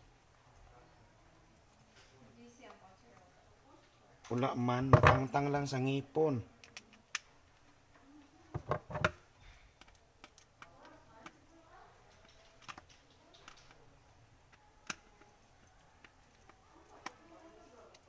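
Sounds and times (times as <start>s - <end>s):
plastic parts clicking: 8.6s - 9.2s, 12.1s - 13.8s.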